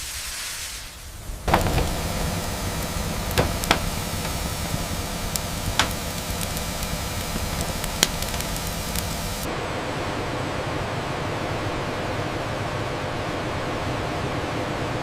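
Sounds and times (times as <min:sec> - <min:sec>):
high hiss: 0:00.0 - 0:09.5
industrial machinery noise: 0:01.0 - 0:10.0
sharp knocks: 0:01.4 - 0:09.4.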